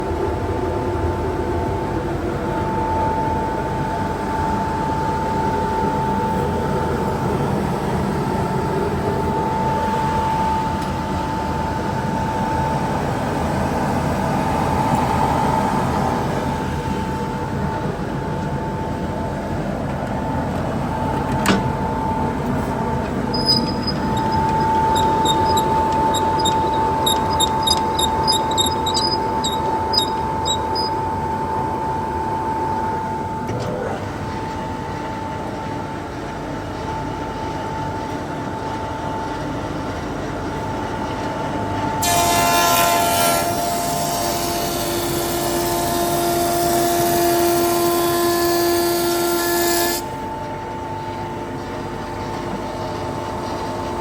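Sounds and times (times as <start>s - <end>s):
planer thicknesser whining: 5.4s - 35.3s.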